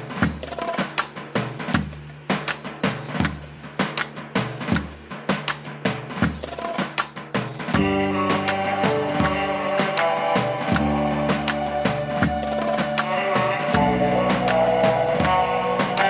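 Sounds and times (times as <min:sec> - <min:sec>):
steady drum beat: 0:00.0 - 0:16.0
bass line: 0:07.8 - 0:16.0.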